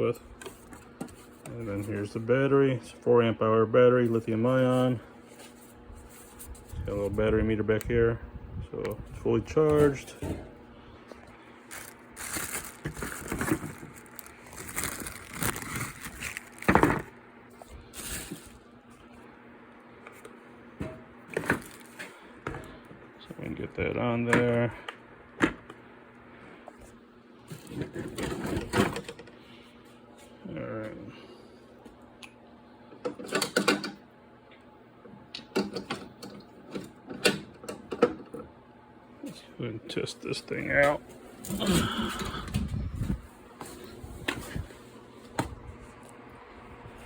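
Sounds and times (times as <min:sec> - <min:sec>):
rustling and clacks of handling: 0:11.1 - 0:17.1
plastic and metal clatter: 0:11.8 - 0:17.1, 0:27.5 - 0:29.2.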